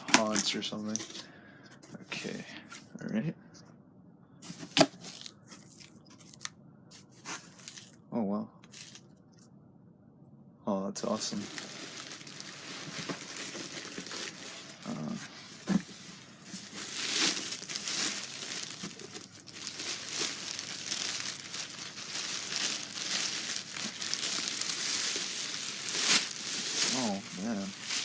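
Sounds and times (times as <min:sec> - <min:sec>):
packaging crinkling and rustling: 0:00.0 - 0:01.3, 0:04.4 - 0:08.0, 0:08.7 - 0:09.1, 0:11.1 - 0:28.0.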